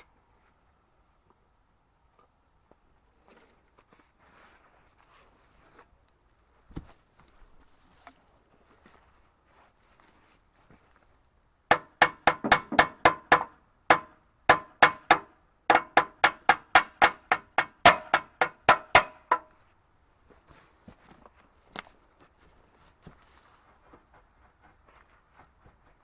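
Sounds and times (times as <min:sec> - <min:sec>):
hammer blows ringing: 0:11.7 - 0:19.5.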